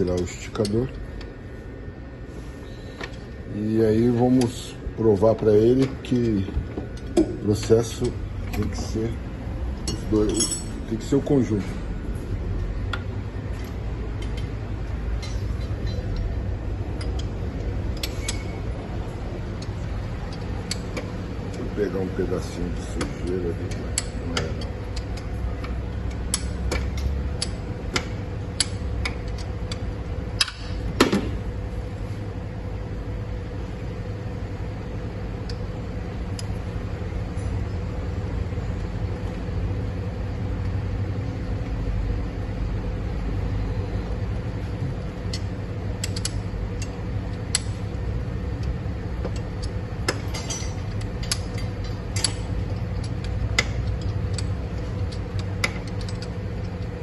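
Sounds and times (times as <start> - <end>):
steady low machine hum: 0.0 - 57.0
hand tools clicking on metal: 22.9 - 29.8, 45.3 - 47.8, 48.6 - 57.0.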